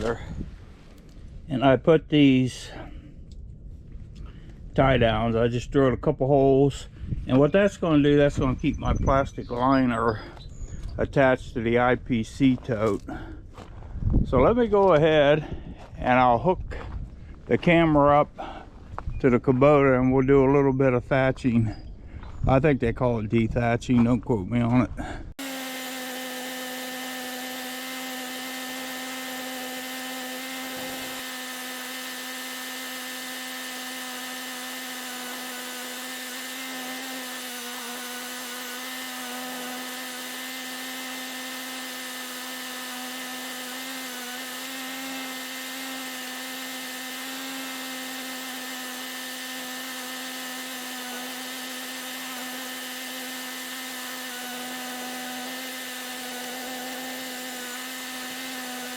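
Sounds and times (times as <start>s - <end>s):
tractor engine droning: 25.4s - 58.9s.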